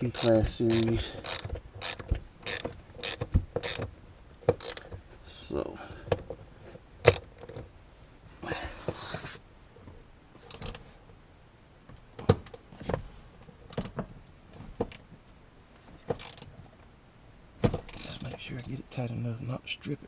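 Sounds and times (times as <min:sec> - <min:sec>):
metallic clicks and knocks: 0:00.0 - 0:05.0.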